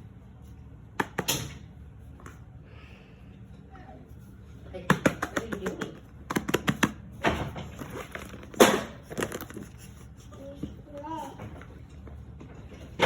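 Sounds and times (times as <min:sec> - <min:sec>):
rustling of small objects: 0:07.7 - 0:10.5.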